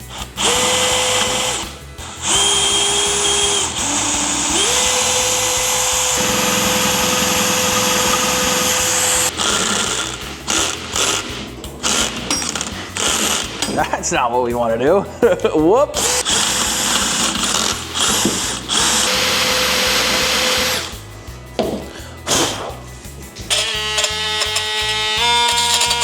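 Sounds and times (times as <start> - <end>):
electric drill drilling: 0.0 - 13.8, 16.0 - 21.0, 23.5 - 26.0
knocks and rattles: 6.2 - 14.0.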